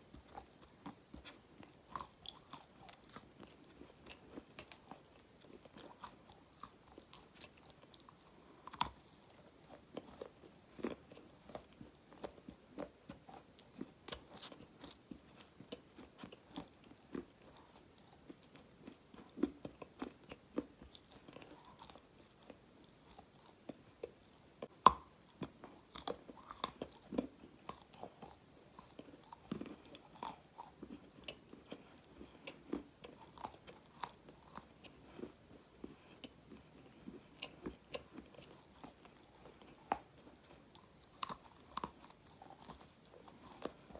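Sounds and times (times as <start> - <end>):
chewing crisp crunches: 0.0 - 43.9.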